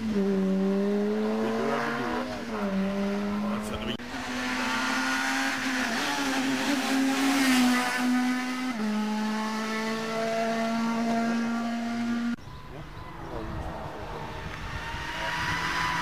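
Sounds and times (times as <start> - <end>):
rally car engine at high revs: 0.0 - 12.4, 13.0 - 16.0
tyre and road noise: 0.0 - 16.0.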